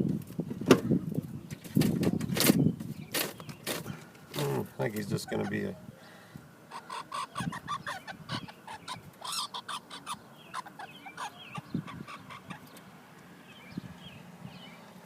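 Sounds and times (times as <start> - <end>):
squirrel chirping: 5.1 - 5.7, 6.7 - 12.9.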